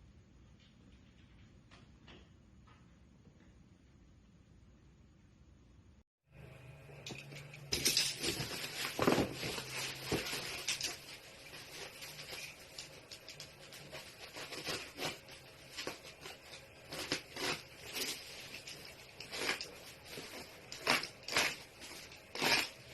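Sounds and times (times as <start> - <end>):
packaging rustling and tearing: 8.0 - 22.7.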